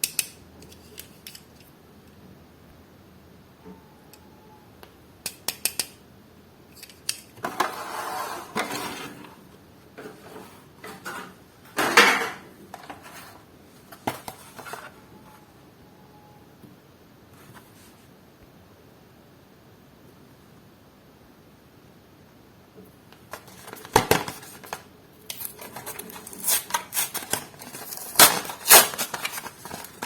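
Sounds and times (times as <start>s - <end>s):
plastic and card crinkling: 23.3s - 30.0s.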